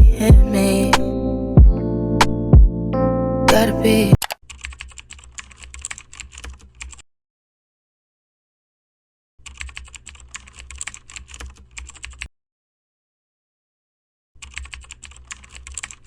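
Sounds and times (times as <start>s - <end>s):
computer keyboard typing: 4.2s - 7.0s, 9.4s - 12.3s, 14.4s - 16.0s.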